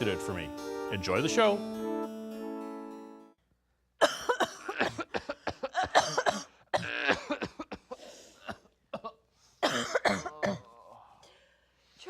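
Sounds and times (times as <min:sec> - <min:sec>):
man coughing: 0:04.0 - 0:10.8
throat clearing: 0:04.2 - 0:10.8.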